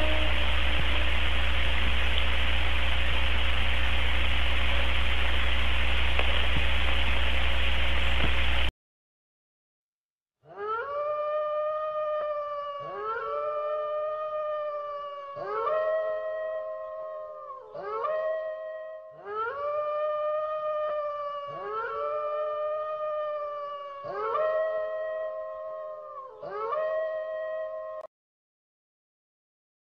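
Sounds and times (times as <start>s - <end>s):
long howl-like wailing cries: 0.0s - 1.6s, 10.5s - 28.1s.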